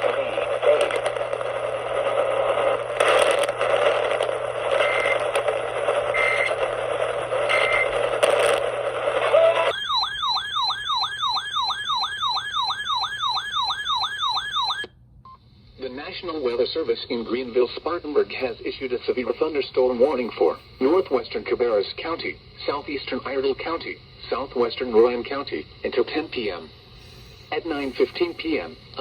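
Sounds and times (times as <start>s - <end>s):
radio static: 0.0s - 9.7s, 15.8s - 29.0s
siren-like yelping tone: 9.4s - 14.9s.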